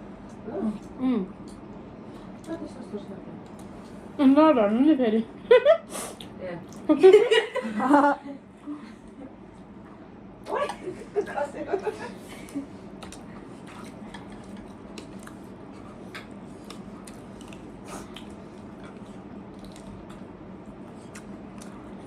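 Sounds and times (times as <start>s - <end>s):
steady low hum: 0.0s - 22.0s
wet chewing: 12.3s - 22.0s.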